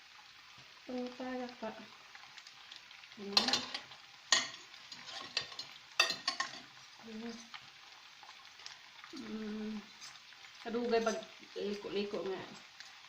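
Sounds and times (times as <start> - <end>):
noodles sizzling in a pan: 0.0 - 13.0
utensil scraping and clacking on pan: 3.3 - 7.6, 9.8 - 11.4.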